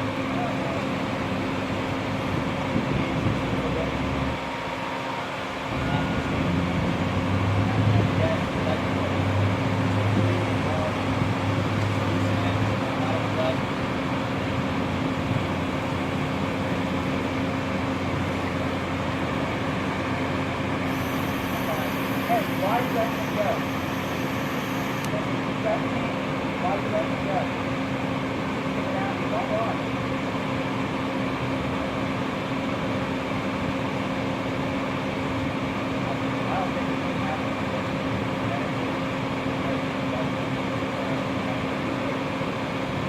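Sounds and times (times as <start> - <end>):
vehicle hum: 0.0 - 43.0
machine hum: 8.6 - 25.3.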